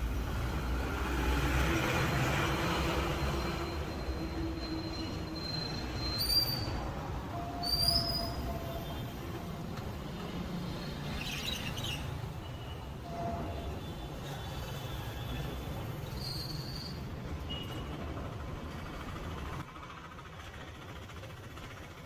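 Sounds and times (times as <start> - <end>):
street traffic rumble: 0.0 - 22.0
brief high squeal: 2.6 - 8.7, 16.0 - 17.7.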